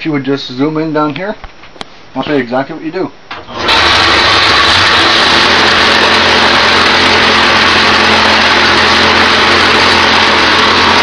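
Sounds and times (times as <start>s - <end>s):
wood lathe whirring: 3.3s - 11.0s.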